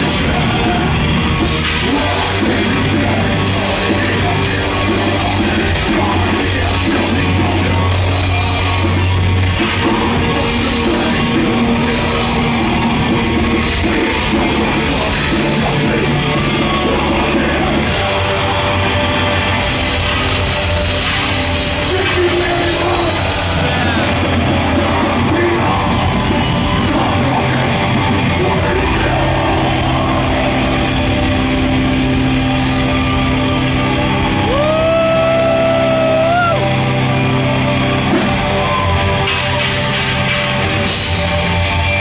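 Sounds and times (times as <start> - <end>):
heavy metal band playing live: 0.0 - 42.0.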